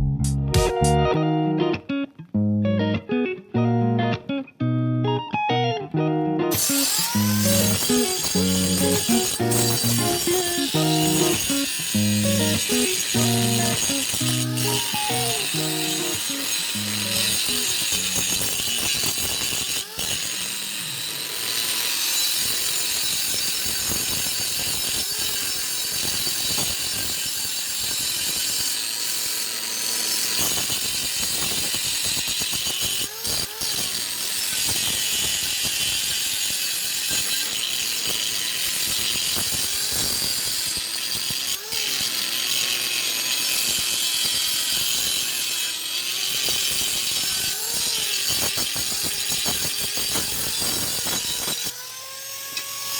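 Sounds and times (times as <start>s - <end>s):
arc welding crackling: 6.5s - 21.6s, 38.0s - 41.4s, 46.2s - 51.7s.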